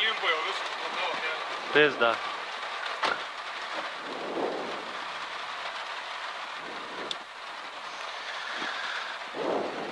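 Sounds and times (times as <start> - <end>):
heavy rain on car roof: 0.0 - 9.9.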